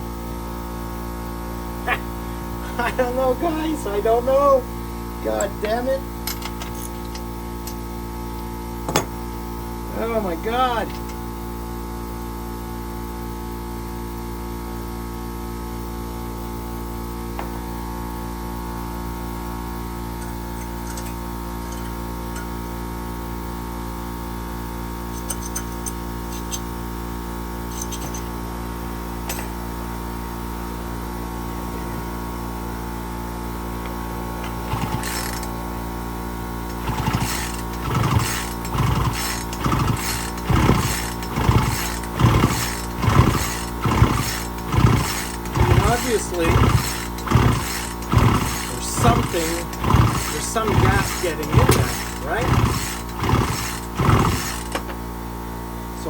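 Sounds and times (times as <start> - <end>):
electrical hum: 25.0 - 55.1
chainsaw recoil starter pulls: 27.7 - 28.3, 34.4 - 35.6, 36.7 - 54.9.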